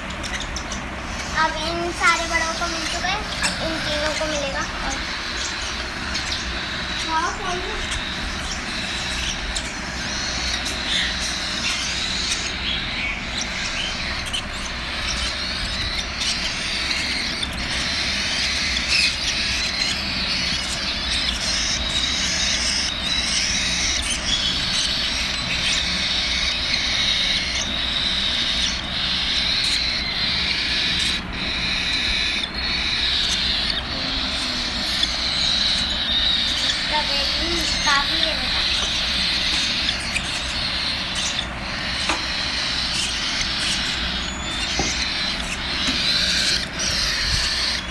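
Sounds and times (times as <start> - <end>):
chicks raspy begging calls: 0.0 - 47.9.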